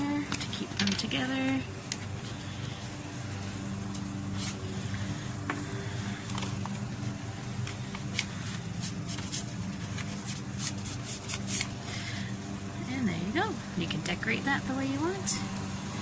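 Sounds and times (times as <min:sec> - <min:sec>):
steady low hum: 0:00.0 - 0:16.0
paper rustling: 0:00.8 - 0:12.6.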